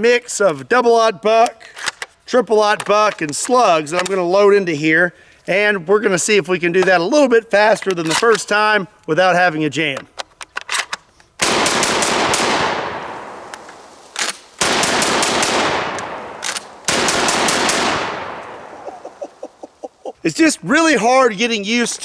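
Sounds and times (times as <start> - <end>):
shotgun mechanism clicks: 1.5 - 2.2, 2.8 - 4.2, 9.9 - 11.3, 13.5 - 14.9, 15.9 - 18.4
shotgun firing rapidly: 11.4 - 13.3, 14.6 - 18.8
gunshot echo: 11.4 - 13.9, 14.6 - 19.2.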